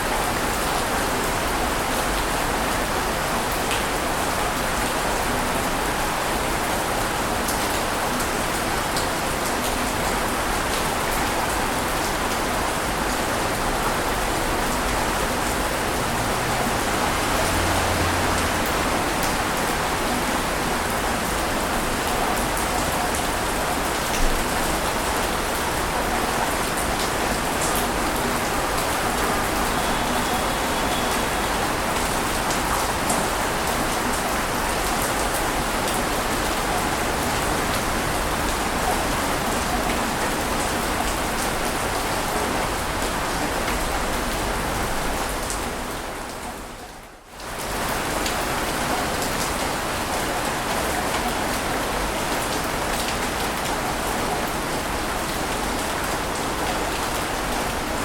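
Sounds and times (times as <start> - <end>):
rushing water with fine crackle: 0.0 - 58.0.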